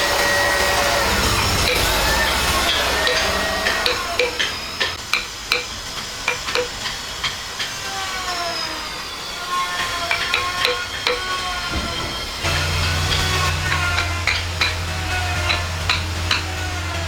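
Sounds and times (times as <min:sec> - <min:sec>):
faint gliding whine: 0:00.0 - 0:17.0
sharp taps and knocks on wood: 0:03.8 - 0:05.7, 0:06.3 - 0:07.4.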